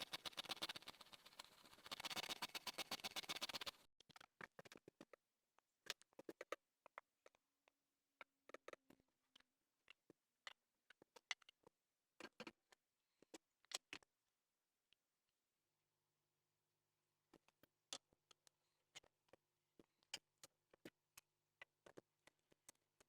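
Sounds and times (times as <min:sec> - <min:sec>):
rapid scraping strokes: 0:00.0 - 0:03.9.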